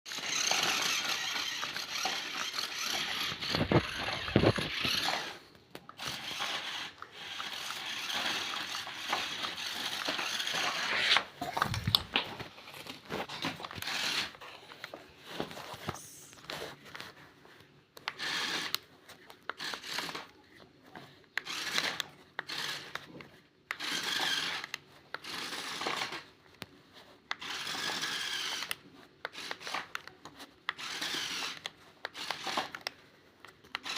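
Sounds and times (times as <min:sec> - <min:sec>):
scraping and rubbing: 0:06.0 - 0:20.8.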